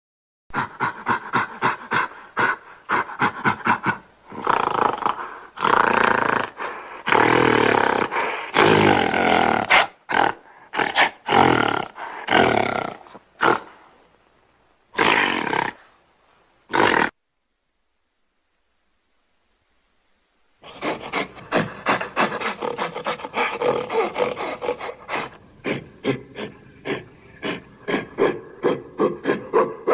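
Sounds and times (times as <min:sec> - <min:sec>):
gorilla grunting: 0:00.5 - 0:13.8, 0:15.0 - 0:15.8, 0:16.7 - 0:17.1, 0:20.6 - 0:29.9
gorilla roaring: 0:00.5 - 0:13.8, 0:15.0 - 0:15.8, 0:16.7 - 0:17.2, 0:20.6 - 0:29.9.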